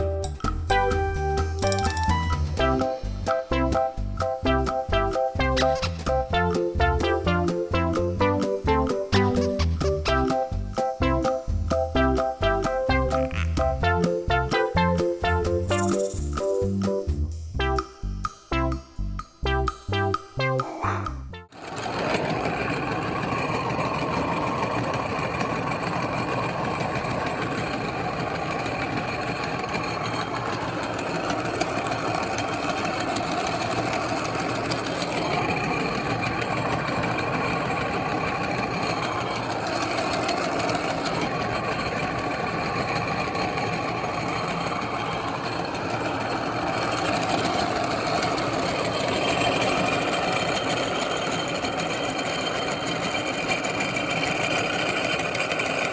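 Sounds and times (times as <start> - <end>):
meat grinder motor running: 21.6 - 55.9.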